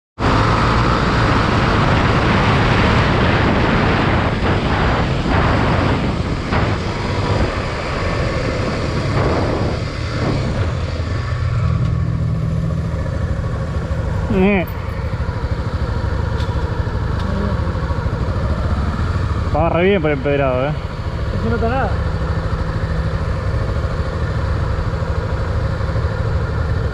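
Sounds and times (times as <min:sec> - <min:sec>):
wind noise on microphone: 0:00.3 - 0:12.4
motorcycle engine running: 0:00.3 - 0:26.9.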